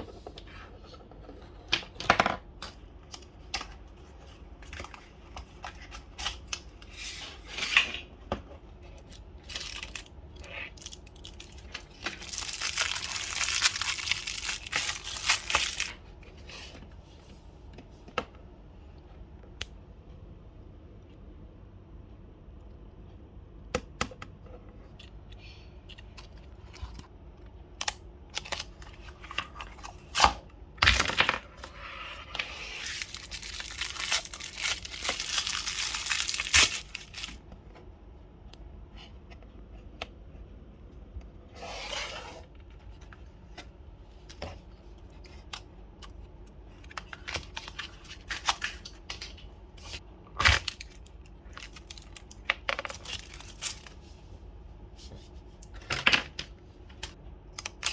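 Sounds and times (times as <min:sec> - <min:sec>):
plastic packaging tearing and crinkling: 0:09.0 - 0:16.0, 0:32.8 - 0:37.4, 0:47.0 - 0:49.0, 0:49.9 - 0:54.0, 0:57.6 - 0:57.9.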